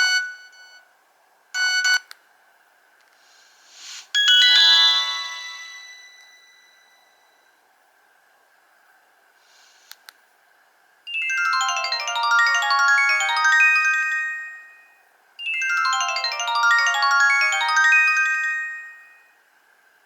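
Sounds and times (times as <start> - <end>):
mobile phone ringtone: 4.2 - 7.3, 11.1 - 19.4.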